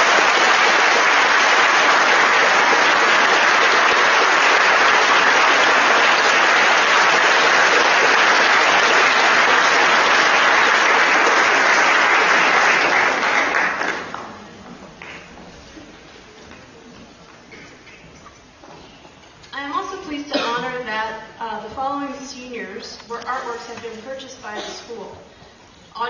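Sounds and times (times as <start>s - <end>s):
audience applauding: 0.0s - 15.2s.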